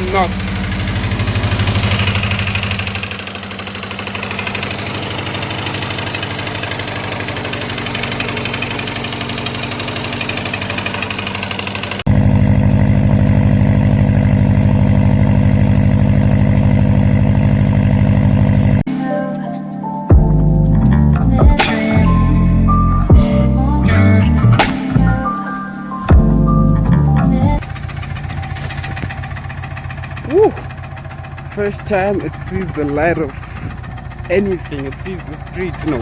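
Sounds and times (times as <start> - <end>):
engine idling with fast knock: 0.0 - 18.8, 27.5 - 36.0.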